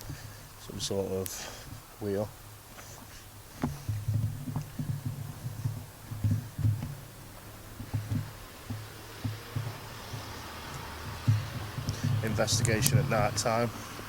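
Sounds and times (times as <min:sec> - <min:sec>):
handling noise thumps on microphone: 0:03.5 - 0:13.6
small clicks: 0:07.8 - 0:13.1.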